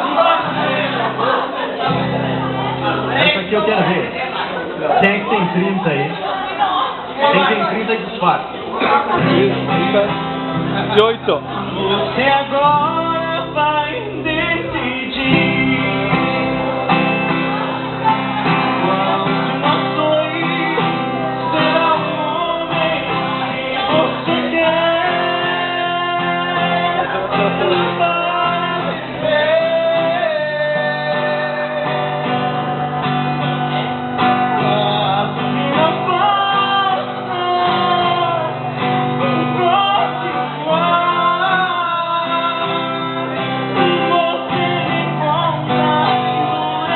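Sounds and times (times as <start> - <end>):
acoustic guitar: 0.0 - 46.9
person singing: 11.6 - 46.9.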